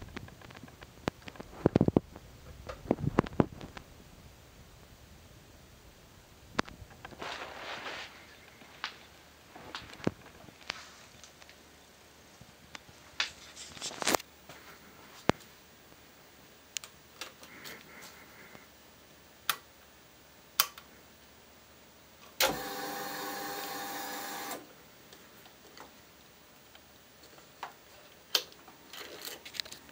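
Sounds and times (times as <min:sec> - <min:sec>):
fuel pump whirring: 0:22.4 - 0:24.6.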